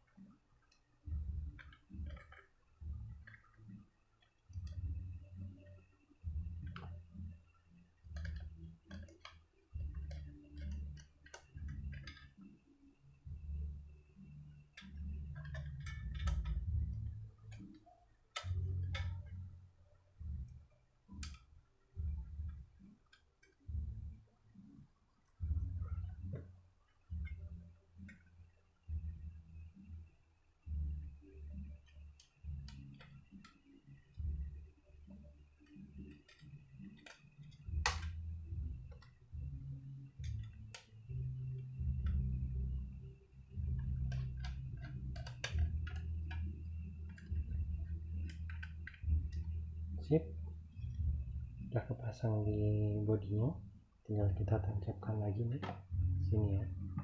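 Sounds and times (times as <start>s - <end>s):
small sharp clicks and taps: 0.0s - 19.6s, 20.2s - 30.0s, 30.7s - 51.8s
low handling rumble: 37.7s - 57.0s.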